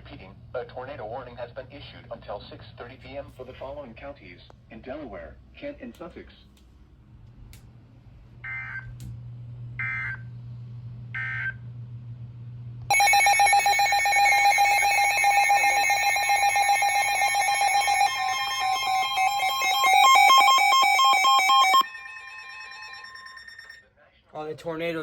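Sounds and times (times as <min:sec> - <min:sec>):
two-tone attention signal: 0:12.9 - 0:23.8.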